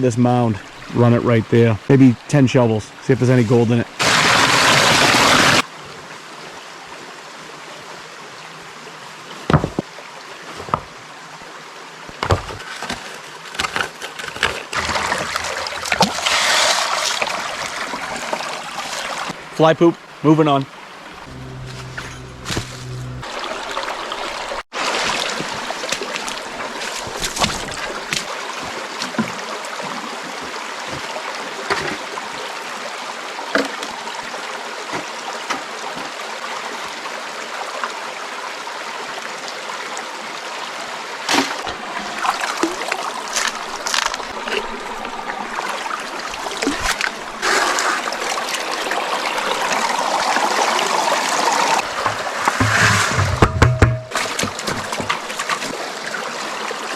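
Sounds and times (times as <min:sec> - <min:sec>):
water running over rocks: 0:20.8 - 0:28.5, 0:41.6 - 0:53.5
knocks and clicks: 0:21.1 - 0:24.6, 0:51.8 - 0:55.2.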